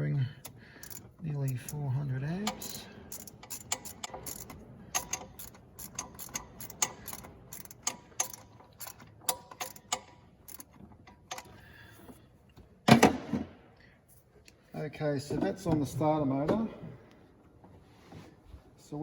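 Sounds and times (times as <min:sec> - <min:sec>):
ratchet wrench clicking: 0:00.4 - 0:11.6.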